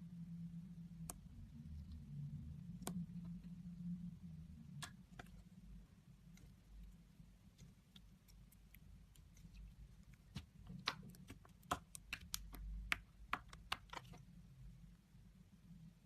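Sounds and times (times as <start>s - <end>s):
sticky clicks and pops of slime: 10.3s - 14.2s.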